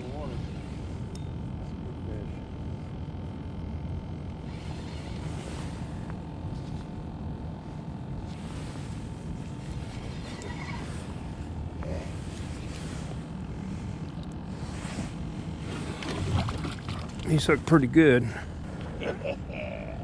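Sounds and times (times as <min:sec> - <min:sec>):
boat motor running: 0:08.2 - 0:19.1
hissy wind or water: 0:15.5 - 0:18.0.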